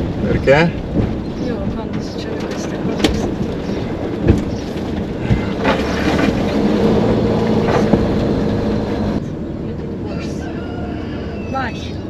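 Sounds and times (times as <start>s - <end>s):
knocks and rattles: 0.0s - 9.2s
van engine running: 0.0s - 12.0s.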